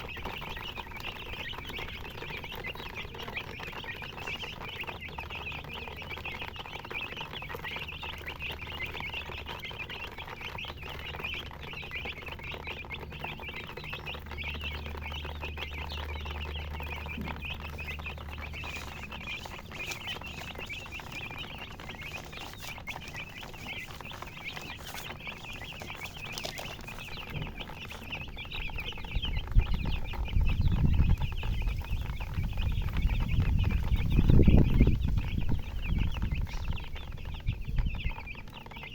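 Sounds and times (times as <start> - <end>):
baby chicks peeping: 0.0 - 38.9
low rumbling thumps: 12.8 - 38.6.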